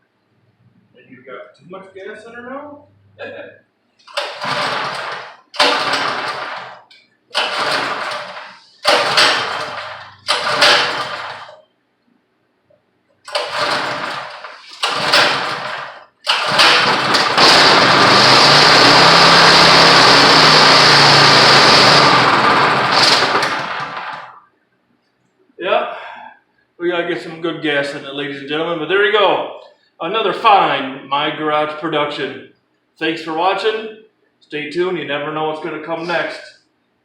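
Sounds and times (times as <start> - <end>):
pressure washer engine pull-starting: 4.0 - 11.6, 13.3 - 24.4.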